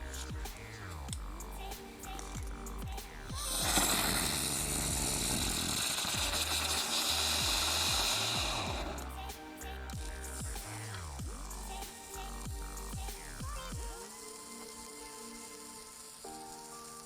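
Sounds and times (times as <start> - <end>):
electronic background music: 0.0 - 17.0
firework crackling: 1.6 - 17.0.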